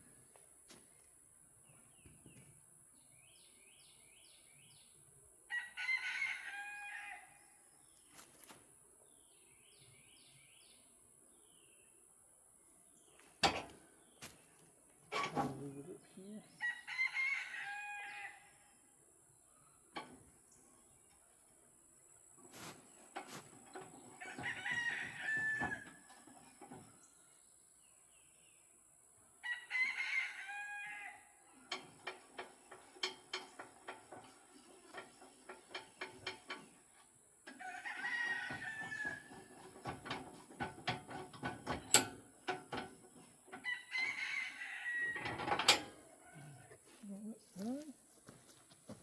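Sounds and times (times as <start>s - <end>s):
rooster crowing: 5.5s - 7.4s, 16.6s - 18.5s, 29.4s - 31.3s, 43.6s - 45.4s.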